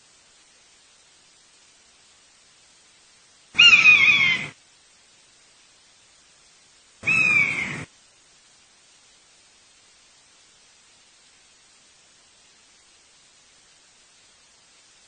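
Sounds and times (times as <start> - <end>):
buzzard calling: 3.6 - 4.6, 7.0 - 7.9.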